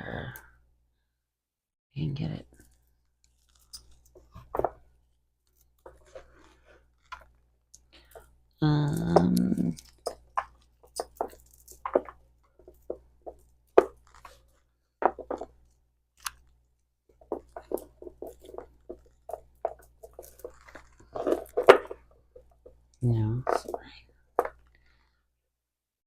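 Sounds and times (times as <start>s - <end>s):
necklace beads clicking: 8.9s - 14.4s, 17.2s - 23.8s.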